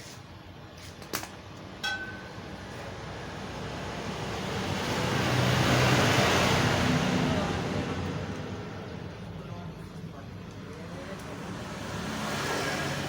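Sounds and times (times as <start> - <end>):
metallic clink of engine parts: 1.2 - 2.3
vehicle passing by: 2.6 - 9.3, 10.6 - 13.0.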